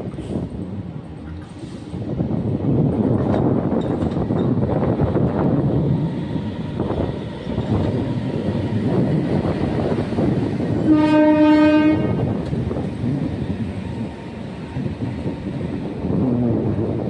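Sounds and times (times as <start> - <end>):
train wheels clattering on rails: 0.0 - 17.0
train horn blast: 10.8 - 12.3.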